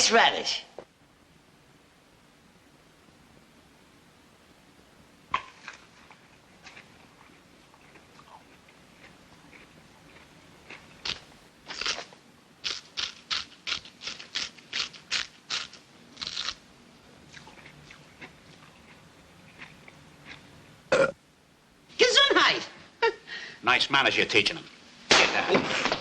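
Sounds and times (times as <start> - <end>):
crunching bites of radish: 5.3 - 16.6.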